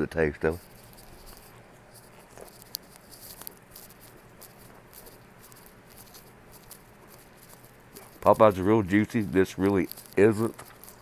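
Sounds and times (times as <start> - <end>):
person chewing: 0.6 - 11.0.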